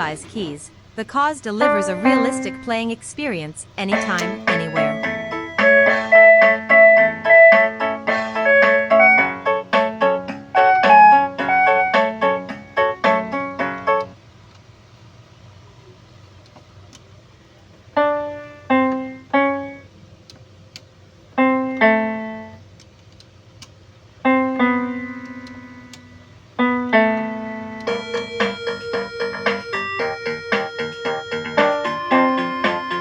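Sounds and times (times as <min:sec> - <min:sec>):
digital piano notes: 0:00.0 - 0:03.0, 0:03.8 - 0:14.2, 0:18.0 - 0:19.9, 0:21.4 - 0:22.6, 0:24.2 - 0:33.0.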